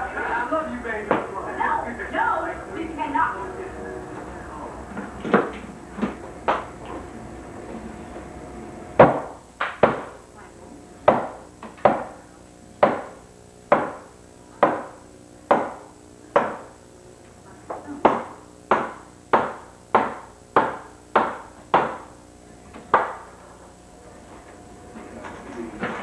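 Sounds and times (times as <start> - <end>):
hammer strikes: 4.9 - 7.1, 9.0 - 10.2, 11.0 - 12.2, 12.8 - 16.7, 18.0 - 22.1, 22.9 - 23.4.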